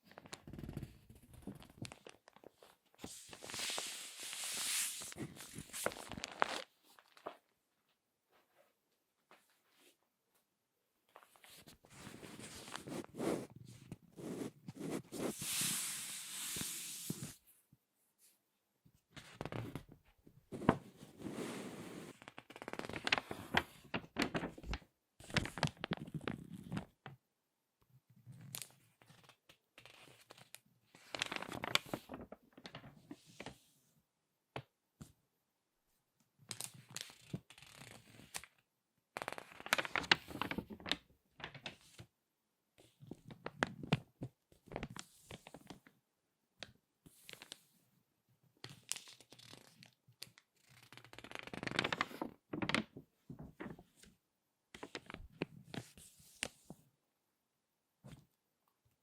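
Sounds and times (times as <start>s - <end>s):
magazine pages crinkling: 1.7s - 7.4s, 22.3s - 26.1s, 31.0s - 33.0s, 39.2s - 42.0s, 48.7s - 54.0s.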